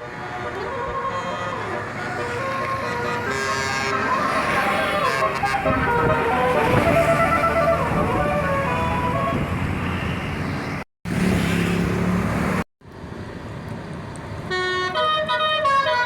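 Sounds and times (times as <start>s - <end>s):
engine and traffic noise: 0.0s - 16.0s
musical bus air horn: 0.1s - 9.5s, 14.5s - 16.0s.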